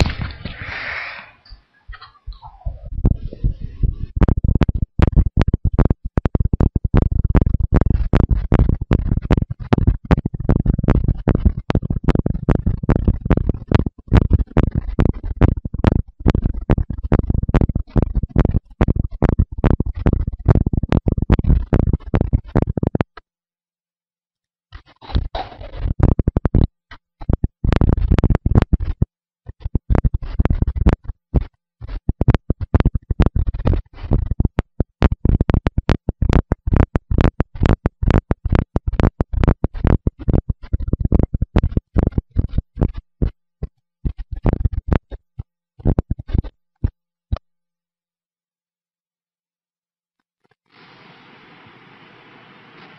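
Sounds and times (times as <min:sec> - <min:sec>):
low thumps: 0:00.0 - 0:00.8, 0:01.5 - 0:23.1
microphone crackling and scraping: 0:00.0 - 0:23.2, 0:24.7 - 0:47.4.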